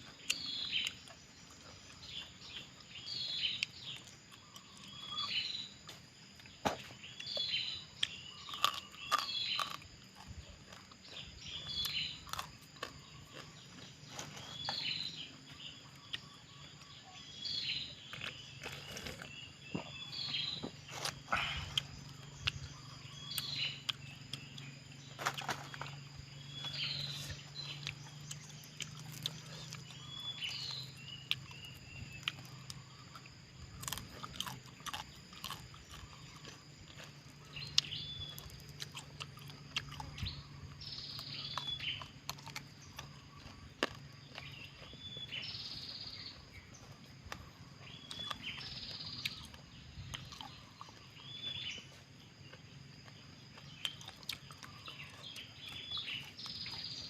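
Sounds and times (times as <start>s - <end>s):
bird chirping call: 0.0s - 6.0s, 6.8s - 9.8s, 10.4s - 34.2s, 37.4s - 57.0s
crunchy chewing of bones: 0.0s - 57.0s
insect drone: 0.0s - 57.0s.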